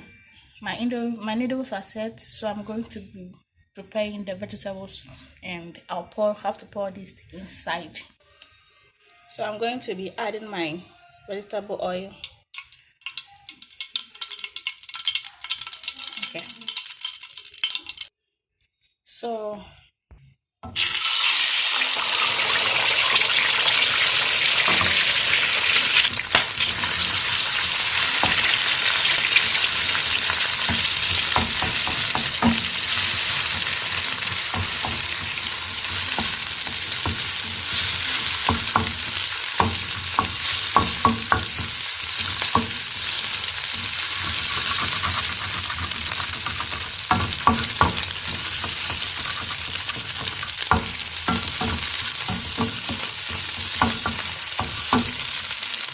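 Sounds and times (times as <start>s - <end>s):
food sizzling in oil: 12.5s - 18.2s, 20.7s - 55.9s
utensil tapping a pan: 28.0s - 55.4s.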